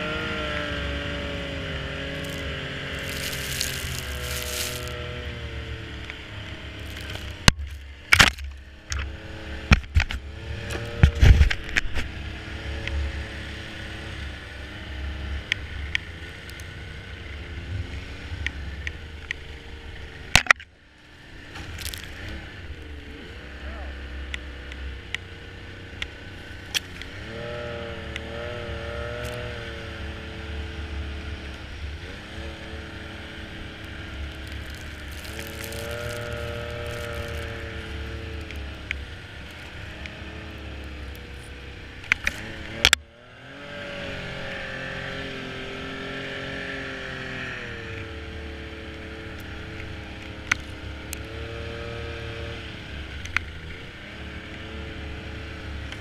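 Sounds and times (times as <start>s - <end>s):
snowmobile engine revving: 0.0s - 20.3s, 21.2s - 56.0s.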